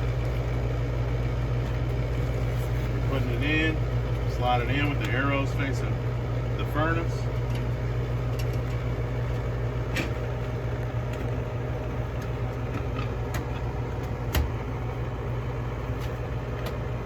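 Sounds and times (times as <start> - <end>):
gas furnace humming: 0.0 - 17.0
air filter clicks and knocks: 12.1 - 14.7.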